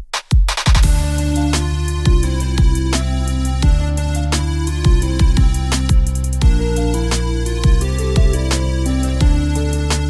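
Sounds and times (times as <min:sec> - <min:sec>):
heavy kick drum: 0:00.0 - 0:01.4, 0:02.0 - 0:03.0, 0:03.6 - 0:04.0, 0:04.9 - 0:06.8, 0:07.6 - 0:08.5, 0:09.2 - 0:09.6
held bass notes: 0:00.9 - 0:10.0.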